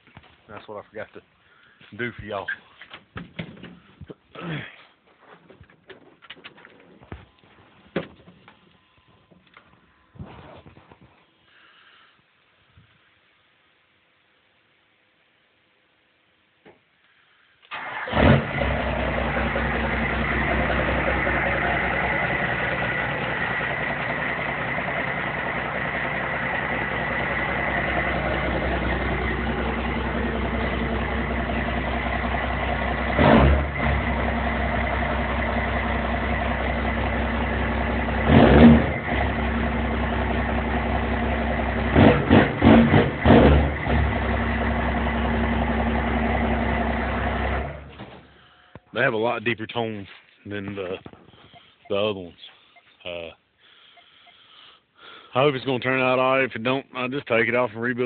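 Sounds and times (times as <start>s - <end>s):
diesel engine idling: 17.7s - 48.5s
engine throttle blips: 17.7s - 48.8s.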